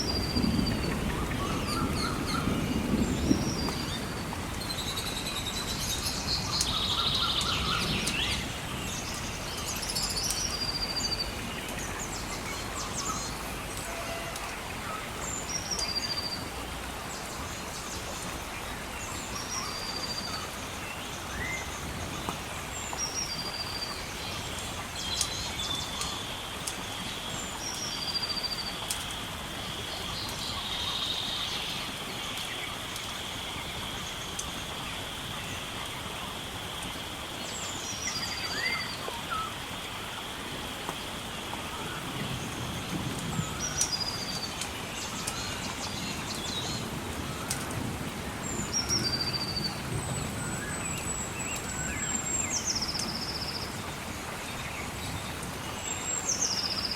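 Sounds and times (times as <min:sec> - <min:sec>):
running water hiss: 0:00.0 - 0:56.9.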